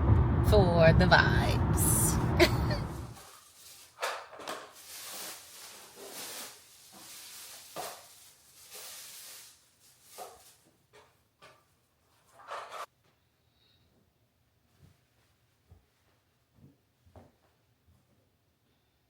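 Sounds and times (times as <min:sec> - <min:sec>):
rustling swishes: 0:04.8 - 0:10.4.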